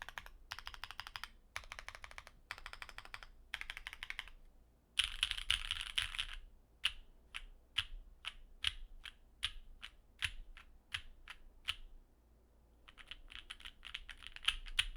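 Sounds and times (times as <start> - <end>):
mechanical keyboard typing: 0.0 - 4.4, 5.0 - 6.4, 12.9 - 14.9.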